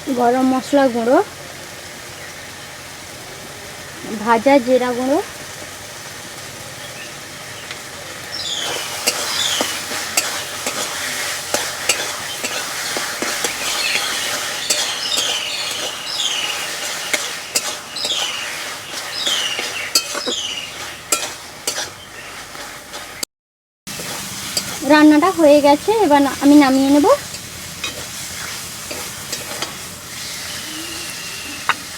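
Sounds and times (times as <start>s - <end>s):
food sizzling in oil: 0.0s - 23.3s, 23.9s - 31.9s
spatula knocking on pan: 9.0s - 10.9s, 11.5s - 21.9s
high scraping squeaks: 28.9s - 31.9s.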